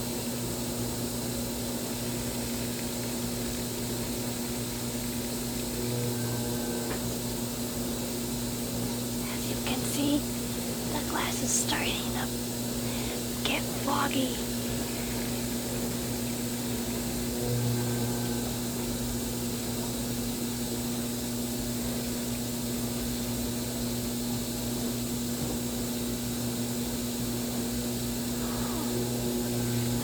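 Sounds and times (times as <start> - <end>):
washing machine motor hum: 0.0 - 9.2, 14.4 - 30.0.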